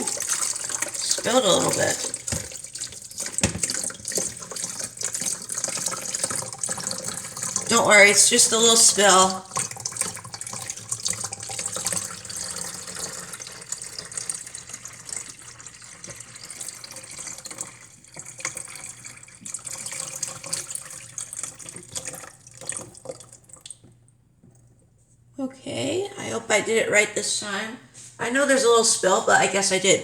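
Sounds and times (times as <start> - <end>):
water pouring into reservoir: 0.0 - 23.8
small knocks: 3.3 - 3.8.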